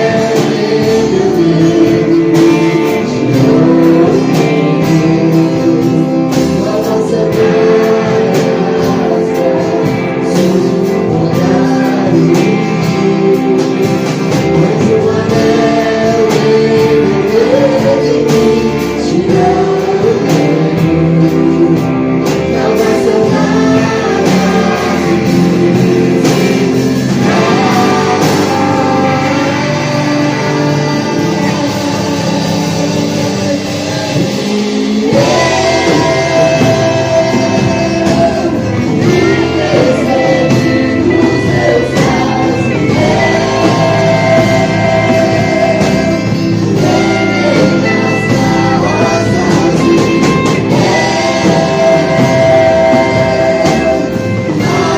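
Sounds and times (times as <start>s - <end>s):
person singing: 0.0s - 54.9s
worship song by a band: 0.0s - 54.9s.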